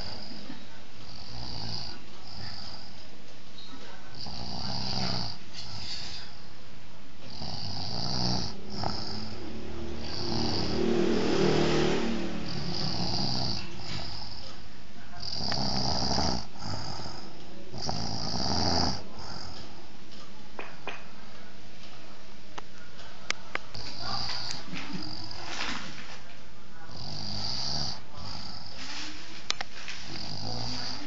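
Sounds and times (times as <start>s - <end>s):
person snoring: 7.3s - 14.4s, 15.2s - 19.6s, 26.9s - 28.8s.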